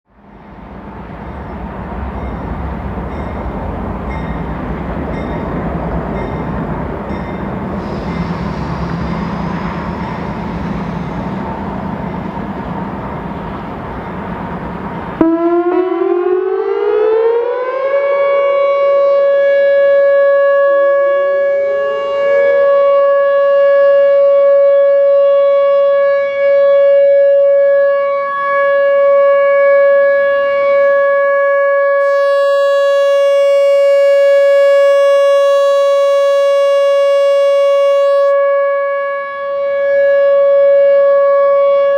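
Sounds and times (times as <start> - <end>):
warning siren wailing: 14.4 - 41.9
loud steady rumble: 32.0 - 38.4
second distant siren wind-up: 32.0 - 38.4.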